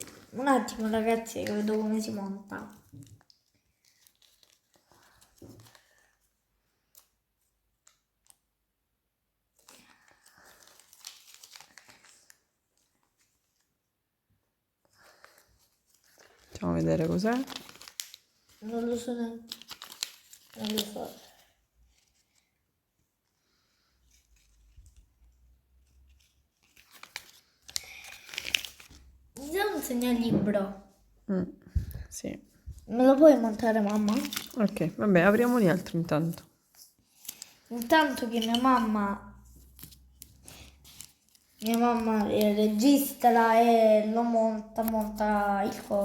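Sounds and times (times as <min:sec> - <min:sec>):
packaging crinkling and rustling: 0:00.0 - 0:06.2, 0:09.5 - 0:13.7, 0:15.1 - 0:22.6, 0:23.5 - 0:30.2, 0:32.8 - 0:43.3.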